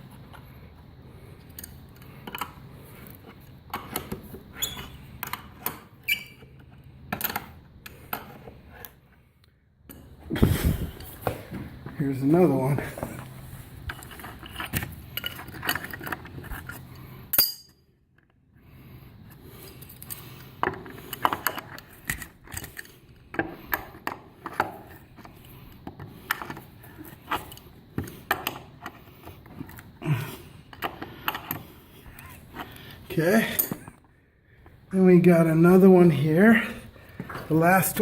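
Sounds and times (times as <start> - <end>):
metal wrench clinking on nut: 17.3 - 17.8.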